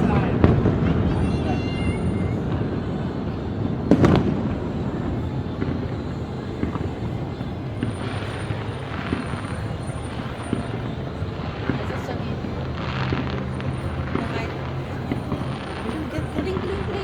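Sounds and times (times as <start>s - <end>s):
continuous low rumble: 0.0s - 17.0s
faint firework pops: 0.0s - 17.0s
loud firework bang: 0.0s - 17.0s.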